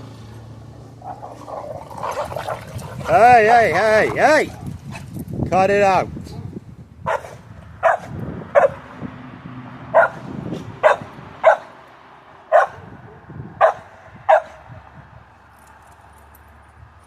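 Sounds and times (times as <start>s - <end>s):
dog barking: 6.3s - 8.8s, 9.9s - 10.2s, 10.8s - 11.8s, 12.5s - 14.7s.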